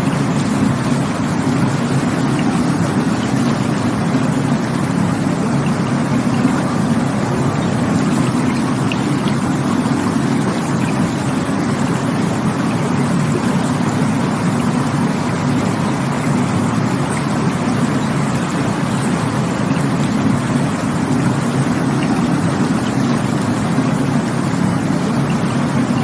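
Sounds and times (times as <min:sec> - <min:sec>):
rushing water: 0:00.0 - 0:26.0.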